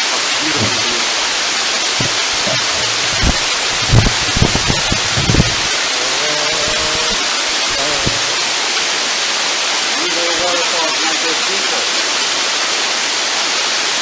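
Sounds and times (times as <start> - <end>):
waterfall rushing: 0.0 - 14.0
low thumps: 0.4 - 5.8, 7.7 - 8.5.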